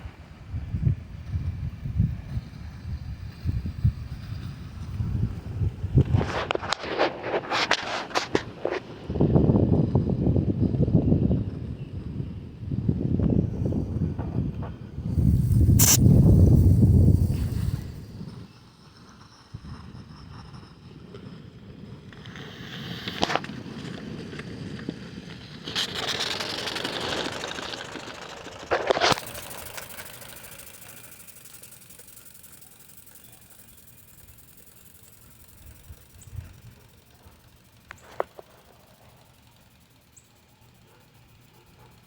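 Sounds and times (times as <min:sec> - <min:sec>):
mechanical clatter: 0:15.1 - 0:18.5, 0:25.3 - 0:42.0
steam hissing: 0:15.1 - 0:18.6, 0:25.7 - 0:42.0
sharp clicks: 0:15.2 - 0:18.1, 0:28.7 - 0:42.0.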